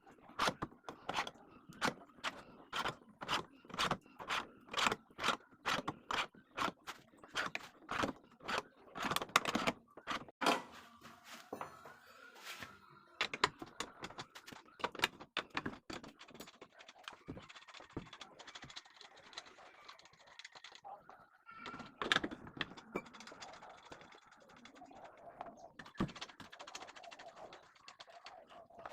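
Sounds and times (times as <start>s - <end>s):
tools clicking and scraping: 0.2s - 10.6s.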